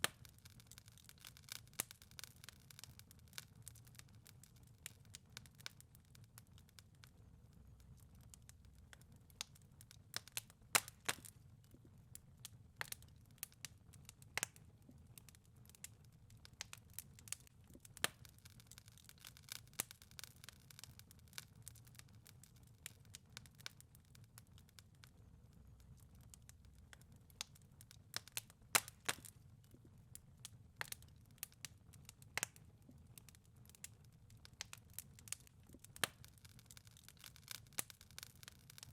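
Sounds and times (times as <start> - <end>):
wood fire crackling: 0.0 - 38.9.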